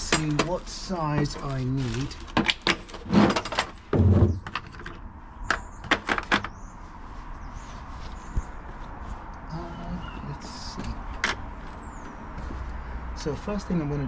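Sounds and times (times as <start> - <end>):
metal hand tools clattering: 0.0 - 3.8.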